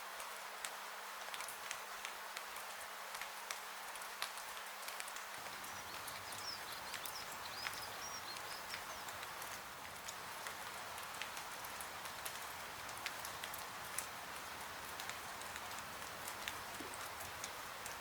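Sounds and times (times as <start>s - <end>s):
steady rain hiss: 0.0s - 18.0s
water drips: 5.0s - 18.0s.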